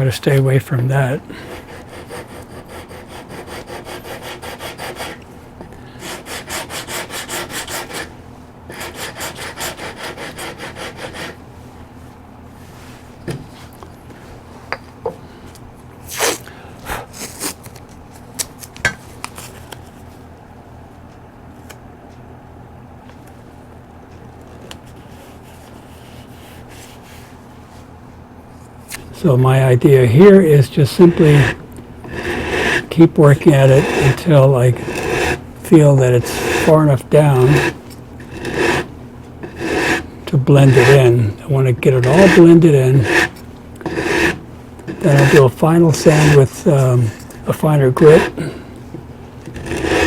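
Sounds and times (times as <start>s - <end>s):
sandpaper rubbing on wood: 30.9s - 41.2s, 41.9s - 46.8s, 47.6s - 48.5s.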